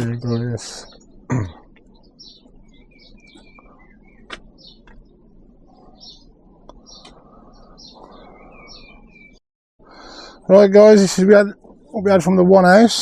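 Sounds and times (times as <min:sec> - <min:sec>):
low steady hum: 0:00.0 - 0:09.3
small birds chirping: 0:00.0 - 0:13.0.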